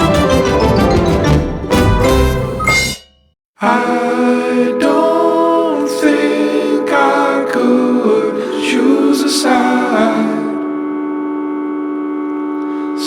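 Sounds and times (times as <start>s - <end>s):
voices singing slow song: 3.6s - 11.7s, 12.6s - 13.0s
sustained chords: 4.0s - 13.0s.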